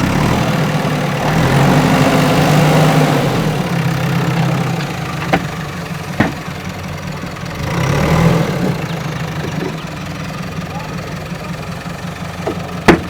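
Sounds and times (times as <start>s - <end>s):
backhoe diesel engine running: 0.0s - 13.0s
sharp knocks: 4.3s - 6.6s, 12.4s - 13.0s.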